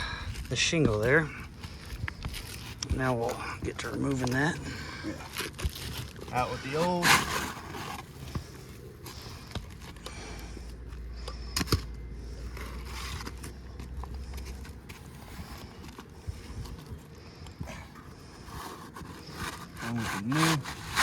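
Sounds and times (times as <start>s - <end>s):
shingle sliding and scraping: 0.0s - 21.0s.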